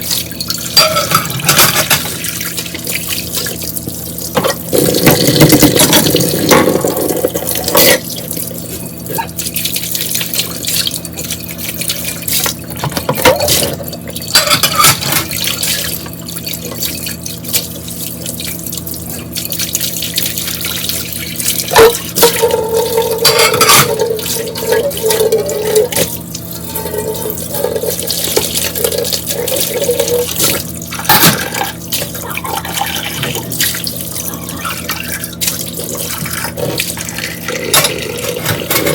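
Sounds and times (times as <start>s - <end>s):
tap water running into sink: 0.0s - 38.9s
dishes knocking and clinking: 0.8s - 2.1s.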